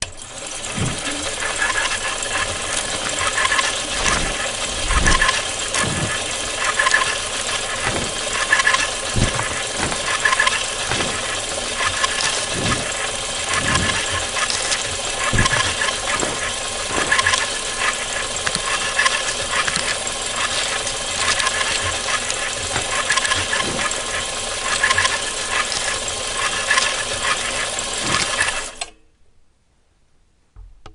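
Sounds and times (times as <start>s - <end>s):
film projector clatter: 0.0s - 29.0s
hiss: 0.6s - 28.7s.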